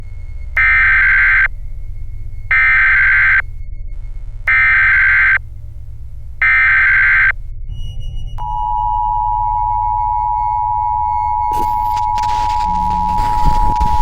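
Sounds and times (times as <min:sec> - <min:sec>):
low hum: 0:00.0 - 0:14.0
electronic alarm beeping: 0:00.6 - 0:01.5, 0:02.5 - 0:03.4, 0:04.5 - 0:05.4, 0:06.4 - 0:14.0.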